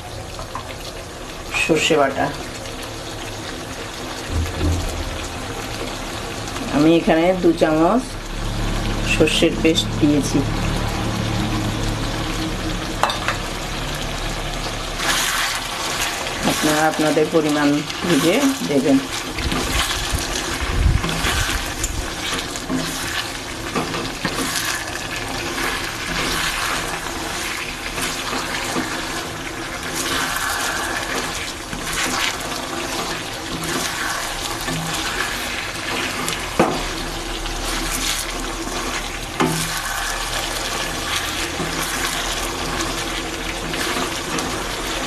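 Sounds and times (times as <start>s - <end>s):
chicken sizzling in a pan: 0.0s - 45.0s
sharp knocks: 4.3s - 5.7s.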